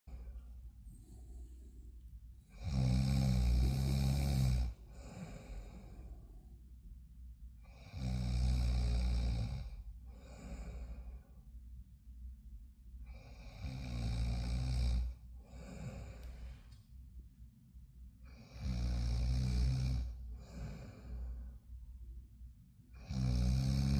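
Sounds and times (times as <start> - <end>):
quiet breath: 0.0 - 17.3, 18.0 - 23.9
loud snoring: 2.5 - 6.0, 7.6 - 10.8, 13.1 - 16.2, 18.3 - 21.3, 23.0 - 23.9.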